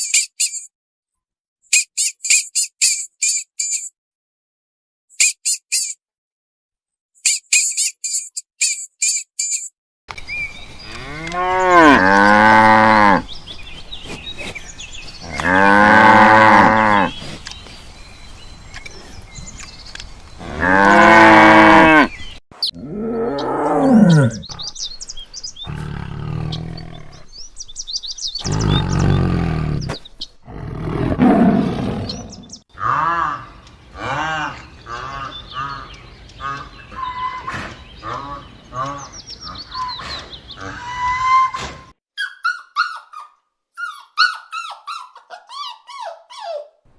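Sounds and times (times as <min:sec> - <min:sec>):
cattle grunting: 0:22.8 - 0:24.8, 0:25.7 - 0:27.3, 0:28.4 - 0:41.0
cattle mooing: 0:32.8 - 0:35.3.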